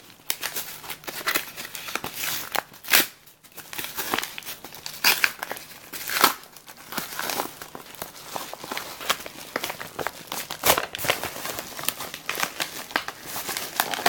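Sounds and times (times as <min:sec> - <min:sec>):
packaging crinkling and tearing: 0:00.0 - 0:14.0.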